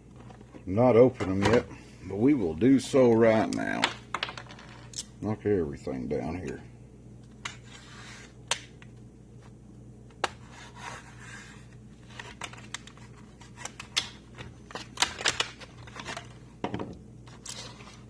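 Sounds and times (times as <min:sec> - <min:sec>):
packaging clicking and snapping: 0:12.1 - 0:16.3.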